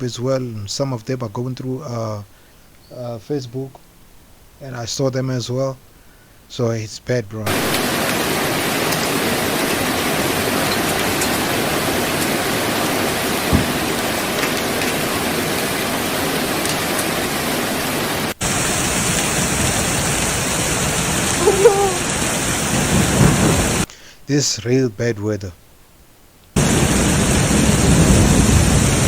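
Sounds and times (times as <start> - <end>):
rain and hail pouring down: 7.5 - 23.9, 26.6 - 29.0
dull thump: 13.5 - 13.9.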